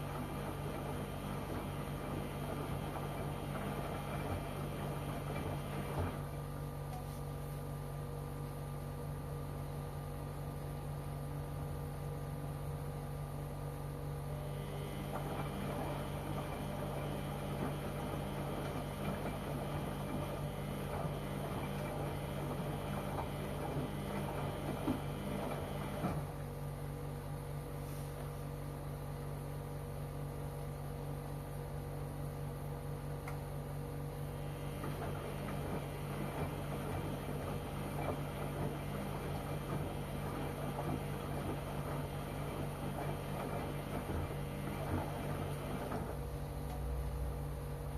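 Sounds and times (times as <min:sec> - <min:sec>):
laundry and water churning: 0:00.0 - 0:06.5, 0:14.8 - 0:26.4, 0:34.4 - 0:47.9
washing machine motor whining: 0:00.0 - 0:27.8, 0:28.4 - 0:47.9
steady machine hum: 0:00.0 - 0:47.9.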